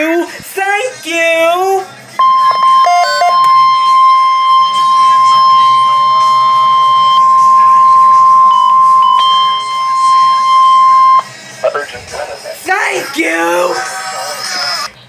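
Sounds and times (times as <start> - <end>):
high-pitched warning alarm tone: 2.2 - 11.3.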